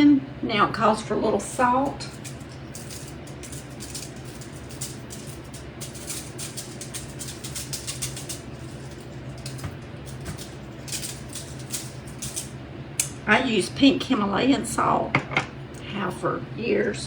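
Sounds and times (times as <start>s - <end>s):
steady low hum: 0.0s - 17.0s
salt grains clicking and rattling: 1.9s - 12.5s.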